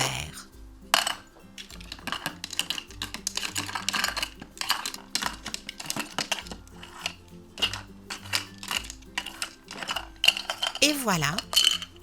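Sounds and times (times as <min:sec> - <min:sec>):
soft background music: 0:00.0 - 0:12.0
toy food pieces clicking: 0:01.0 - 0:12.0.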